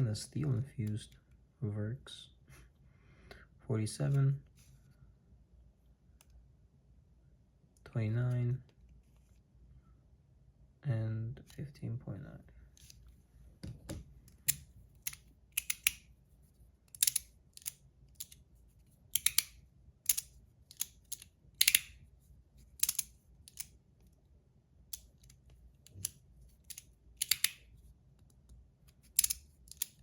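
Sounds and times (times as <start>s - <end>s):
fidget toy metallic clicks: 14.4s - 16.0s, 16.9s - 18.4s, 19.1s - 22.0s, 22.8s - 23.7s, 25.9s - 27.6s, 29.2s - 30.0s.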